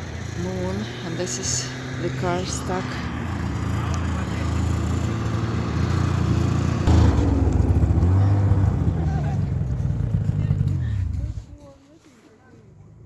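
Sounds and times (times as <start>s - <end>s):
car engine revving under load: 1.8s - 11.6s.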